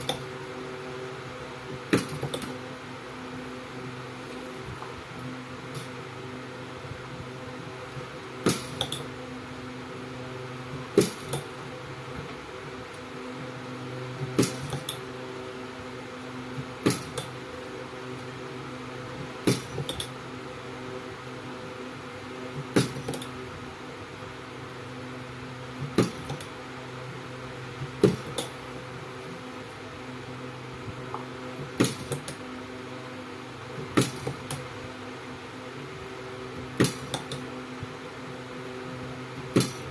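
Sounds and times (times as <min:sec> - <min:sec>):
steady hum: 0:00.0 - 0:39.9
spot welder snapping: 0:08.4 - 0:09.0, 0:14.4 - 0:15.0, 0:16.8 - 0:17.4, 0:31.6 - 0:32.4, 0:36.8 - 0:37.5, 0:39.5 - 0:39.9.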